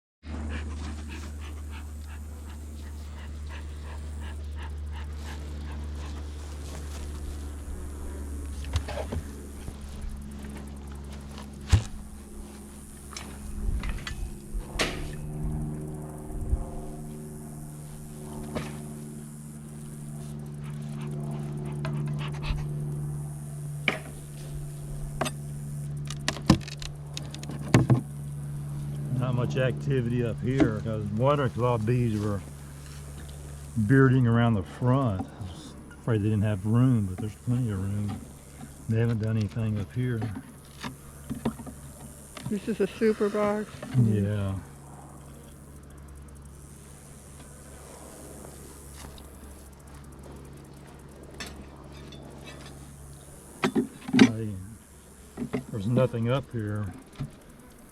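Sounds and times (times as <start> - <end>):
steady low hum: 0.2 - 57.9
rapid rhythmic panting: 0.3 - 7.3
honeybees buzzing: 0.3 - 57.9.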